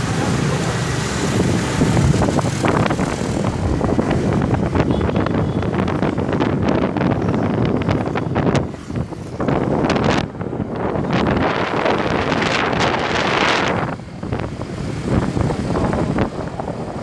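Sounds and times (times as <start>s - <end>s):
wind buffeting microphone: 0.0s - 17.0s.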